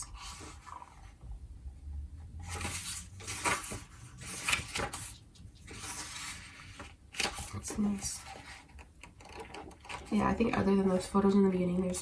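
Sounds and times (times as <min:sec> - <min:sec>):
paper pages turning: 0:02.4 - 0:10.8.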